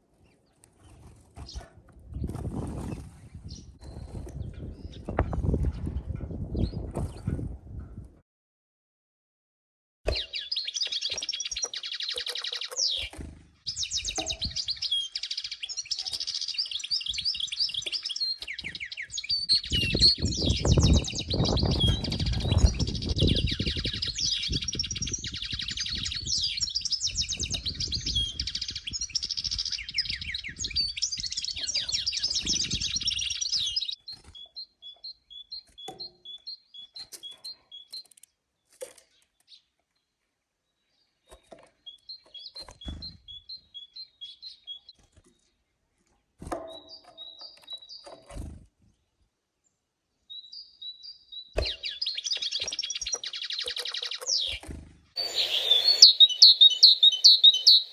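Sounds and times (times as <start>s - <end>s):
birds chirping in a chorus: 0.2s - 7.2s, 10.1s - 45.7s, 46.5s - 48.4s, 50.2s - 57.9s
bird two-note call: 55.2s - 57.9s.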